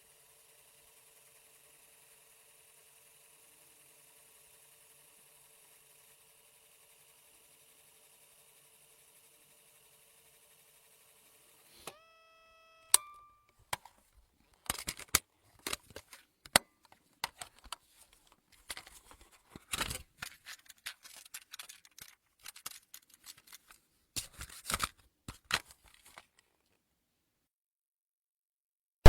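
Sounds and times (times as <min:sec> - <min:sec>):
rapid clicks and crackles: 0:14.5 - 0:26.5.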